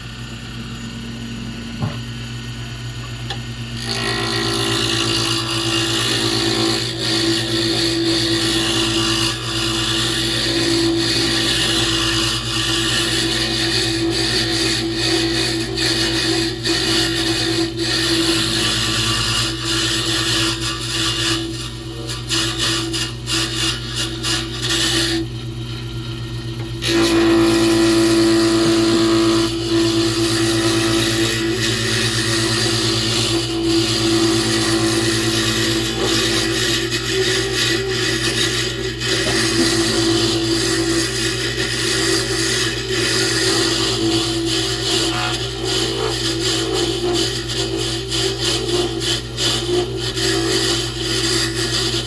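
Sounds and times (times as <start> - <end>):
lathe motor hum: 0.0 - 52.0
tool scraping wood: 3.8 - 25.8, 26.4 - 52.0.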